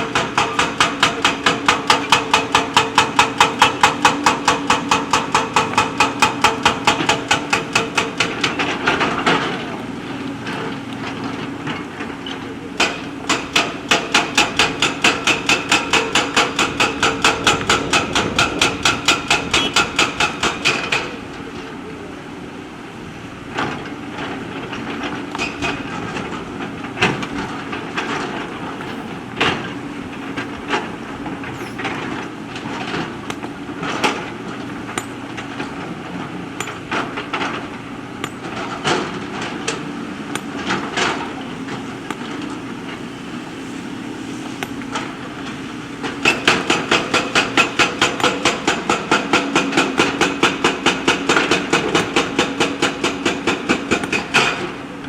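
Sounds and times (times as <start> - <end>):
metallic knocks and clanks: 0.0 - 9.8, 10.4 - 21.2
rapid regular hammering: 0.0 - 21.2, 25.3 - 43.2, 44.4 - 54.6
diesel engine running: 0.0 - 55.0.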